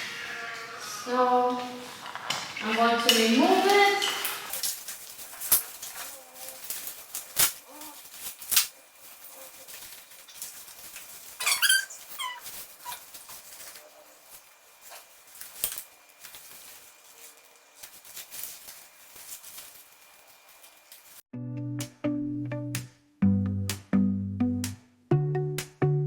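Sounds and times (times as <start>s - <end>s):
rustling: 4.4s - 21.3s.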